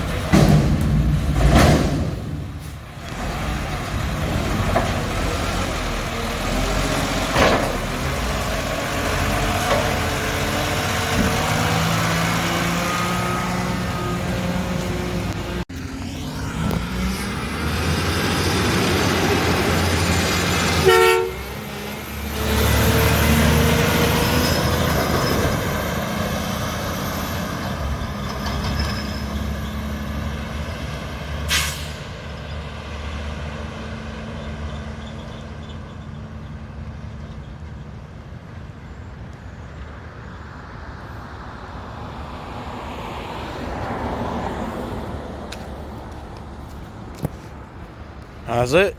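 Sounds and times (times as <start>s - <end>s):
garbage truck diesel engine: 0.0s - 40.8s
truck horn honk: 20.8s - 21.7s.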